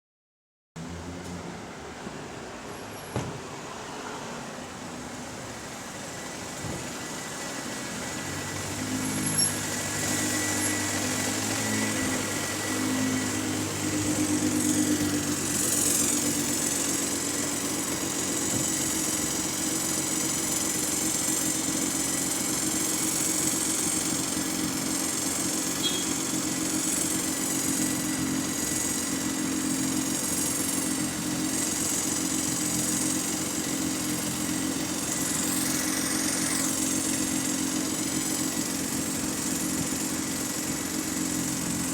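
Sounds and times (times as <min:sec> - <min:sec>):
bus engine running: 0:00.8 - 0:41.9
high-pitched wavering whine: 0:07.2 - 0:16.2, 0:25.8 - 0:26.3.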